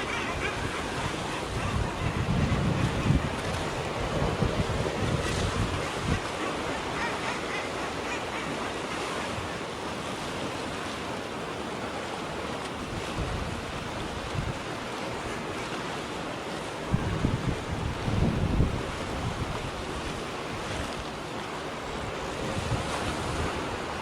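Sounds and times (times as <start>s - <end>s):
wind buffeting microphone: 0.0s - 6.4s, 16.9s - 21.0s, 22.0s - 24.0s
sea waves breaking on shore: 0.0s - 24.0s.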